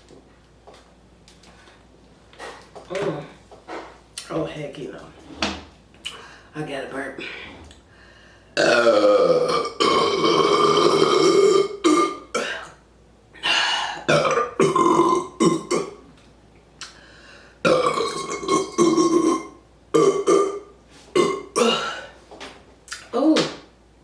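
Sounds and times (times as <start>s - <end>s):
woman burping loudly: 8.6s - 12.8s, 13.4s - 16.0s, 17.6s - 22.1s.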